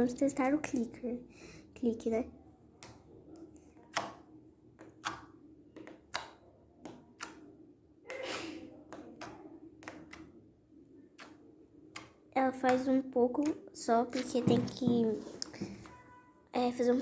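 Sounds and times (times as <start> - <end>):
slime clicking: 3.9 - 5.3, 5.9 - 7.5, 8.9 - 10.3, 11.2 - 12.8.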